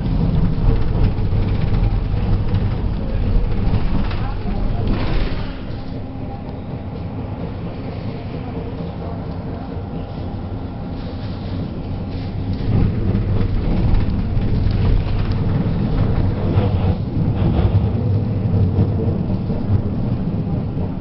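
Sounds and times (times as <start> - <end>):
rattling and clatter: 0.0 - 6.0, 11.6 - 21.0
tram wheels rumbling: 0.0 - 21.0.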